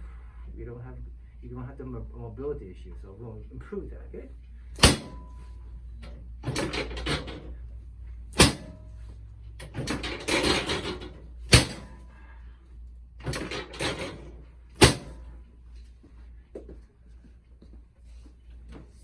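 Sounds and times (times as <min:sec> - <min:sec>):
sharp knocks: 0:04.8 - 0:05.3, 0:08.4 - 0:08.9, 0:09.7 - 0:12.0, 0:13.3 - 0:15.3.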